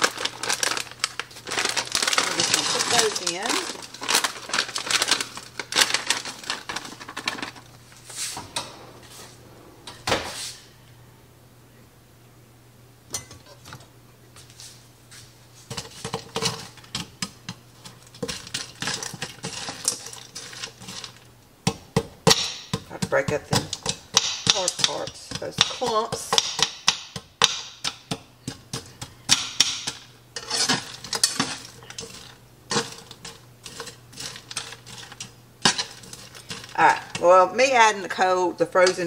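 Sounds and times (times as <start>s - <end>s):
frozen vegetables clattering into pan: 0.0s - 7.8s, 15.6s - 37.3s
utensil scraping a pan: 15.6s - 21.2s, 30.4s - 37.3s.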